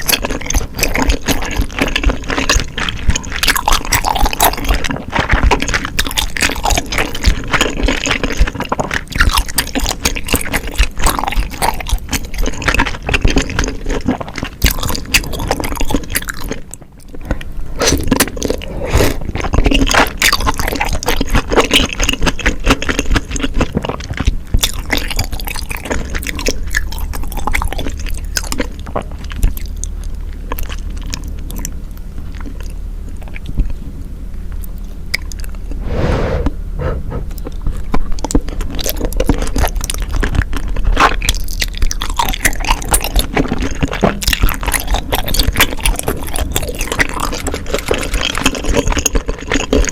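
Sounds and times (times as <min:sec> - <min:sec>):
wet chewing mouth clicks: 0:00.0 - 0:33.8, 0:34.6 - 0:35.8, 0:36.8 - 0:49.9
short rushing sound: 0:35.7 - 0:37.3.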